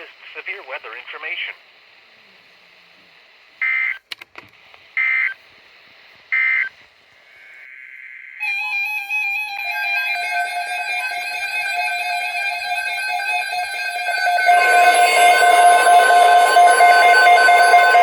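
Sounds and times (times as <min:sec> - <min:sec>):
radio hiss: 0:00.0 - 0:08.1
buzzing data bursts: 0:07.5 - 0:18.0
electronic music with synth tones: 0:08.4 - 0:18.0.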